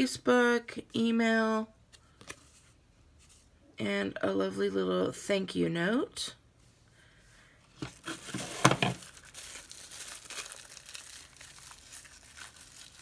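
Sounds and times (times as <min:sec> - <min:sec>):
packaging crinkling and rustling: 0:07.8 - 0:13.0.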